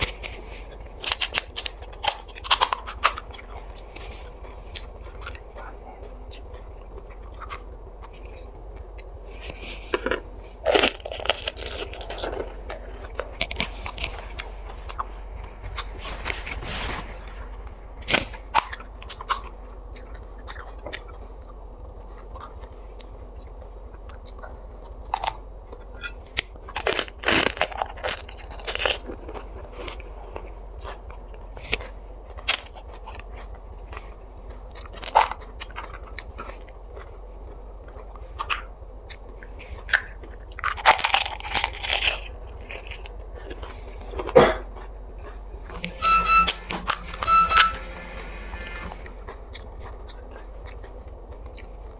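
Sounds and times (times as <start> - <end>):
crisp shells crunching: 0.0 - 4.9, 9.6 - 19.5, 26.7 - 29.1, 39.9 - 43.1
chewing: 0.0 - 45.8, 49.3 - 51.9.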